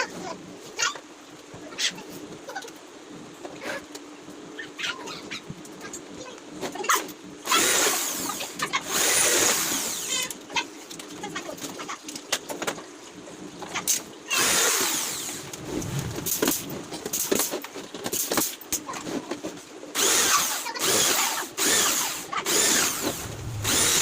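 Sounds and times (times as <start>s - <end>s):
power drill running: 7.5s - 10.2s, 14.4s - 16.5s, 20.0s - 24.0s.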